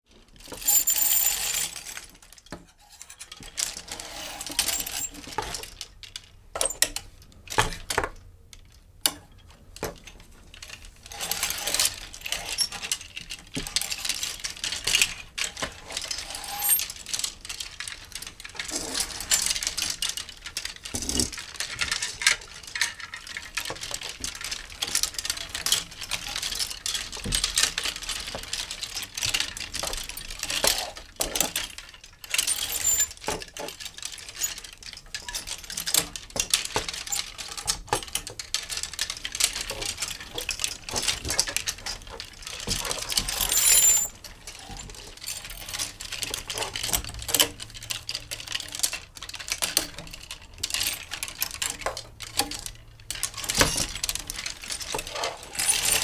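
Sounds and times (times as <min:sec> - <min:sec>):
clothes hangers sliding on rail: 0:15.4 - 0:17.4, 0:49.6 - 0:56.0.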